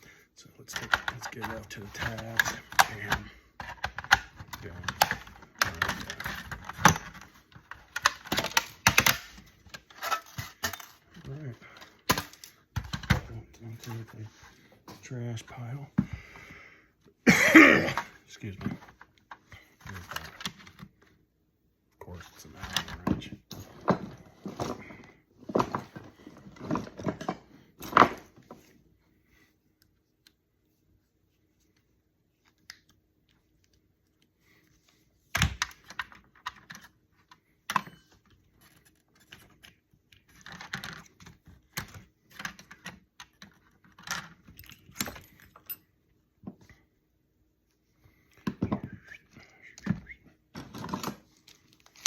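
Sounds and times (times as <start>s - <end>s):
hand tools and plastic parts clicking: 0.7s - 14.1s, 35.3s - 45.9s.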